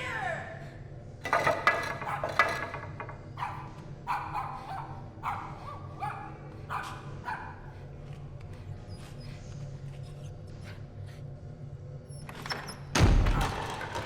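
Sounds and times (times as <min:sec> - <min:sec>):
dog barking: 0:01.9 - 0:02.8, 0:03.4 - 0:07.8.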